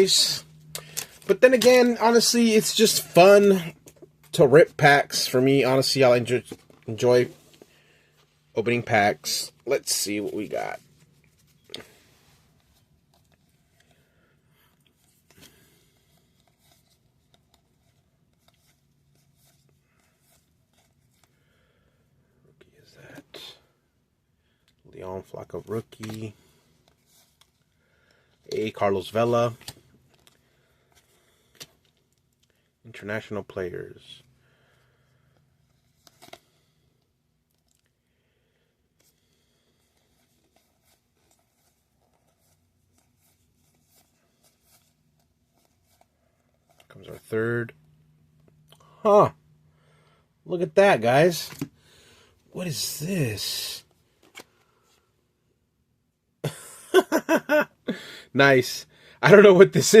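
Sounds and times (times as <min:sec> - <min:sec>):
faint low room hum: 0:00.0 - 1:00.0
trading cards sliding and clicking: 0:00.6 - 0:04.1, 0:25.9 - 0:27.6, 0:54.2 - 0:55.0
trading cards rustling and clicking: 0:00.6 - 0:07.7, 0:25.7 - 0:32.6, 0:35.6 - 0:36.8, 0:51.2 - 0:51.8, 0:52.6 - 0:55.0.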